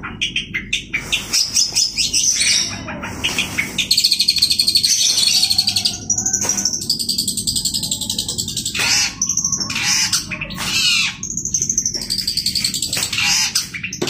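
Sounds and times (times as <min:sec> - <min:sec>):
rapid bird trill: 0:00.0 - 0:14.0
bird singing high chattering notes: 0:00.2 - 0:14.0.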